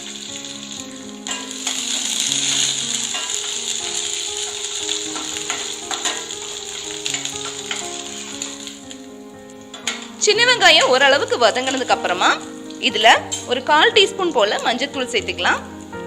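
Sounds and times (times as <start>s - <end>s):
shallots sizzling in hot oil: 0.0s - 16.0s.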